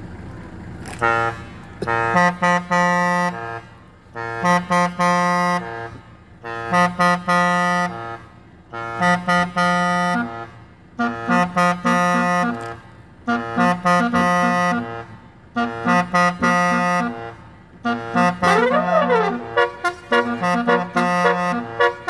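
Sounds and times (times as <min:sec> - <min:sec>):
musical bus horn playing tune: 0:00.8 - 0:22.0.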